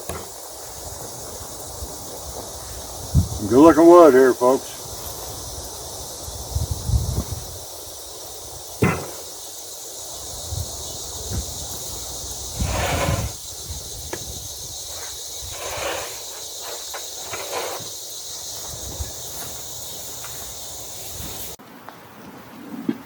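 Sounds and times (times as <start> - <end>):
high-pitched insect drone: 0.0 - 21.6
rustling or scraping: 12.6 - 13.4, 14.9 - 20.4.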